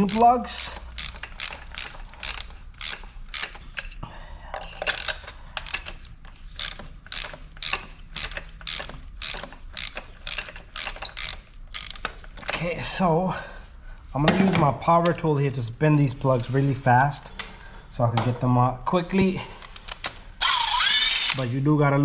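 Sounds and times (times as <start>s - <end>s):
ratchet clicking: 0.0s - 4.0s, 4.6s - 12.4s, 20.4s - 21.5s.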